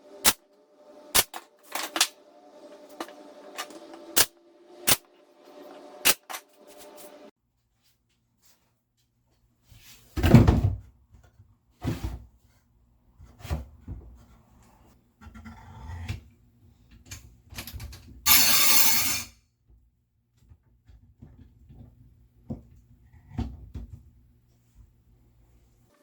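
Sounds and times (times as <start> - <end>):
loud noisy sound: 0.0 - 7.3.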